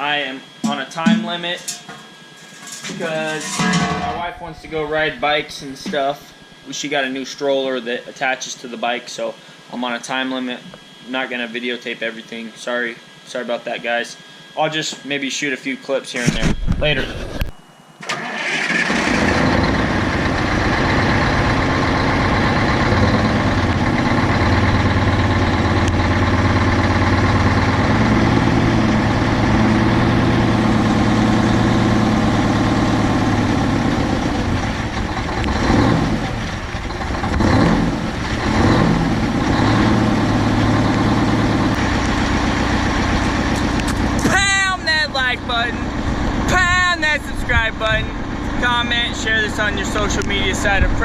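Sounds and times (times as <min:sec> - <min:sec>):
diesel truck engine idling: 0:18.4 - 0:51.0.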